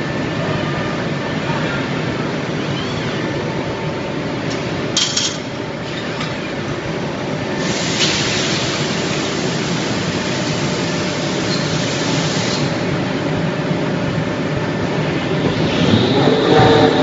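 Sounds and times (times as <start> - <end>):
industrial machine noise: 0.0 - 17.0
loud hiss of spray: 7.6 - 12.9.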